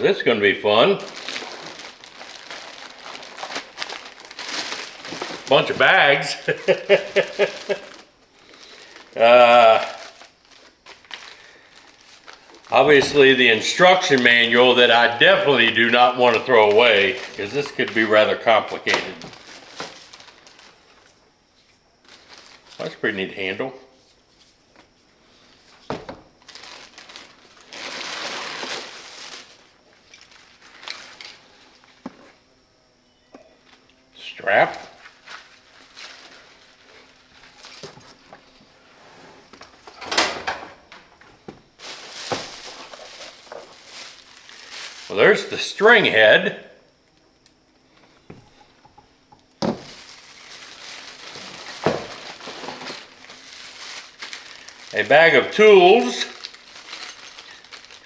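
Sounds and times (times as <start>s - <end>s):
plastic packaging crinkling: 0.0s - 21.2s, 22.0s - 23.0s, 25.5s - 32.0s, 34.8s - 38.6s, 40.8s - 46.2s, 49.6s - 58.0s
plastic wrapping rustling: 0.0s - 21.2s, 22.0s - 23.3s, 24.3s - 32.3s, 34.7s - 40.0s, 40.8s - 46.2s, 49.5s - 58.0s.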